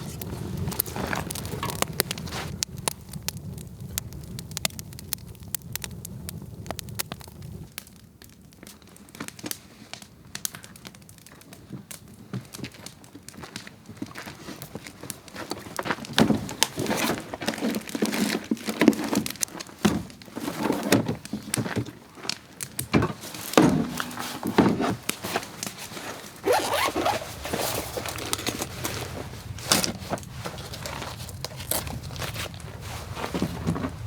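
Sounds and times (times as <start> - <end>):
crunching and crinkling: 0.0 - 34.0
firewood knocking: 15.7 - 25.7.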